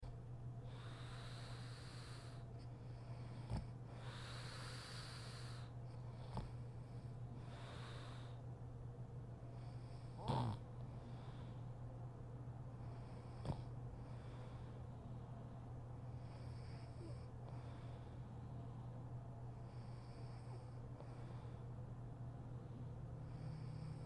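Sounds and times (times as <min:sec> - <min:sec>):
snorts: 0:09.9 - 0:10.7
woman snoring: 0:10.2 - 0:10.6.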